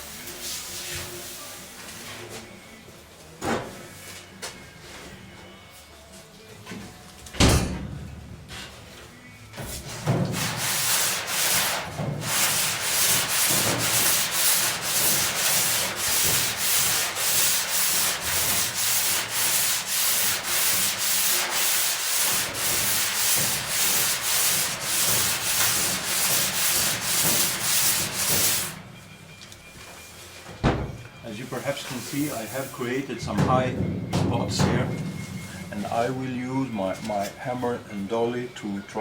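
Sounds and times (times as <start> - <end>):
hand sanding metal panel: 9.7 - 28.8, 31.3 - 37.8.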